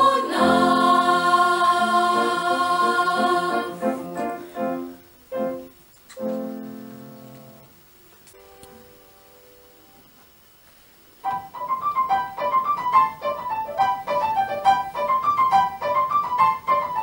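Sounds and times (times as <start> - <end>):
brisk piano notes and chords: 0.0 - 7.7, 11.2 - 17.0
faint chord: 8.4 - 10.0.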